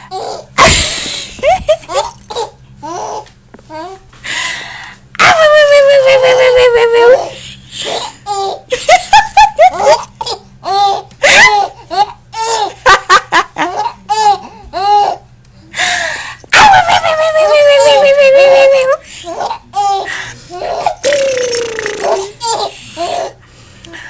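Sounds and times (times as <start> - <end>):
baby giggling: 19.3 - 23.3
baby squealing: 20.6 - 23.3.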